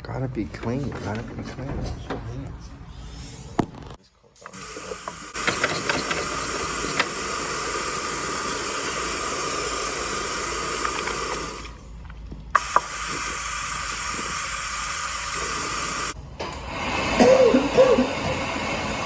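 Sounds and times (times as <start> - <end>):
hand dryer blowing: 4.6 - 11.8, 12.6 - 19.0.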